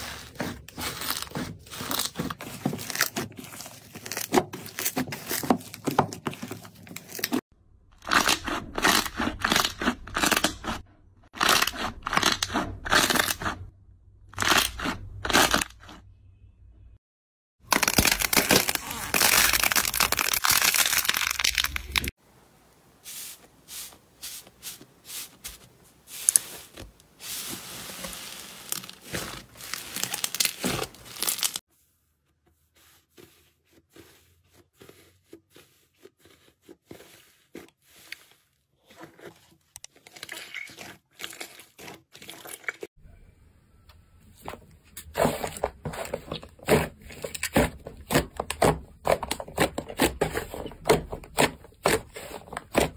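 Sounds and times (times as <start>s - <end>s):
slime crackling and popping: 17.7s - 22.1s, 28.7s - 31.6s.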